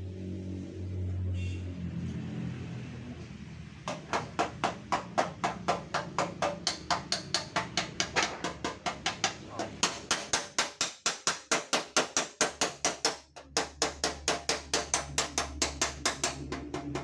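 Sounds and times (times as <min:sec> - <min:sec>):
hammer tapping steel fender: 0:03.9 - 0:17.0.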